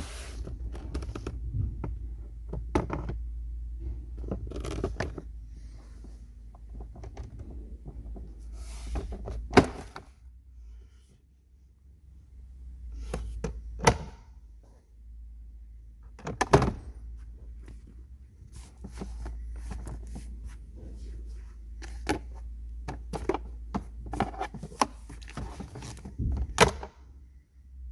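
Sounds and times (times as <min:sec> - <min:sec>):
steady low rumble: 0:00.0 - 0:04.5.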